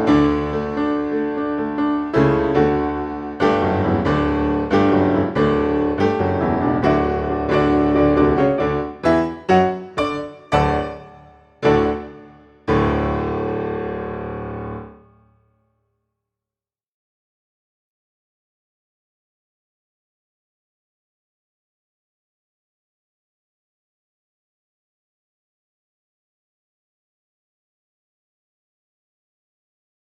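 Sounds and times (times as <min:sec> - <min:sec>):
piano music: 0:00.0 - 0:15.4.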